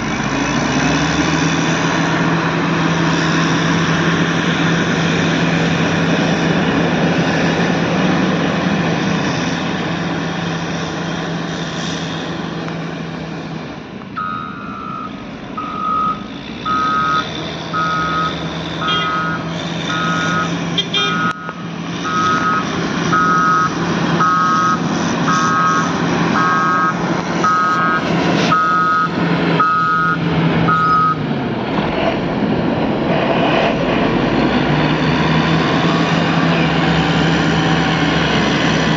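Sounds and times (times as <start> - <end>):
diesel engine running: 0.0 - 38.9
reversing alarm beeping: 14.2 - 31.2.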